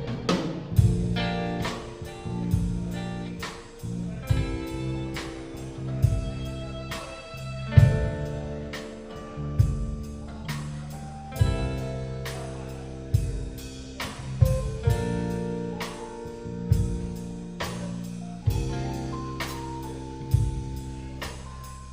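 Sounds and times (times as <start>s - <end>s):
heavy accented drum hit: 0.0s - 5.2s, 7.8s - 8.4s
drum kit: 0.0s - 21.9s
electric guitars ringing chords: 0.0s - 21.9s
live rock band playing: 0.0s - 21.9s.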